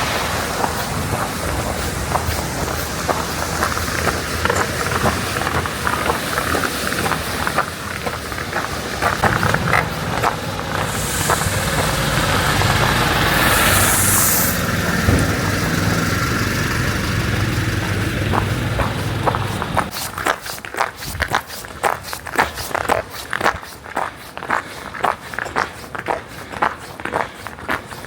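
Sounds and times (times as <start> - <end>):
vehicle engine running: 0.0 - 19.9
short hisses: 10.7 - 15.4.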